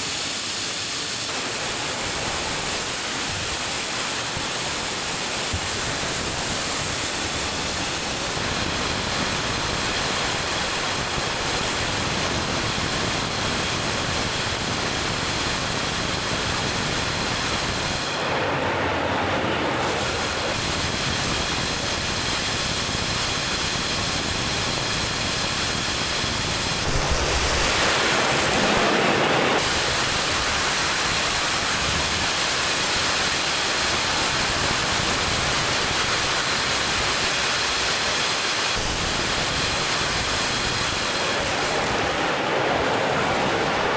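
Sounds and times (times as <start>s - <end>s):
rush of air and grain: 19.8s - 43.9s
faint high whine: 24.2s - 37.0s.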